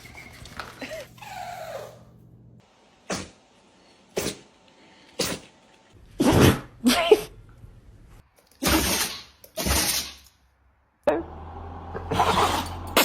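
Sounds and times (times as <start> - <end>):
dog sneezing: 3.1 - 3.4, 4.2 - 4.5, 5.2 - 5.5.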